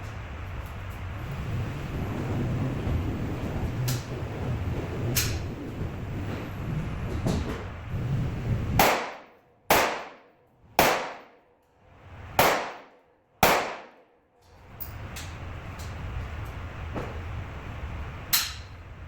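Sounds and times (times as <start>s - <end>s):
pistol shots with echo: 8.8s - 10.2s, 10.8s - 11.3s, 12.4s - 14.0s.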